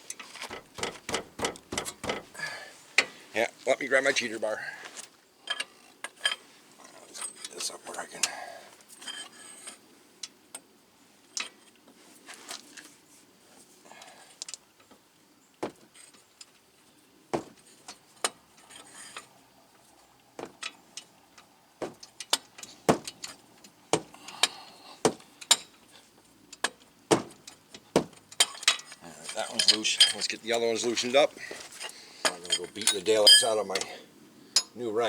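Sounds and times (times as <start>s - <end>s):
steel hand tools clinking: 28.4s - 30.3s, 32.3s - 33.9s.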